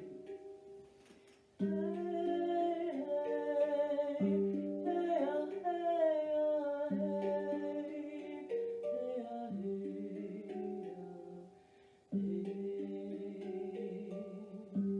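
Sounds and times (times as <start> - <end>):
handpan notes ringing: 0.0 - 0.9
wordless singing: 1.6 - 14.9.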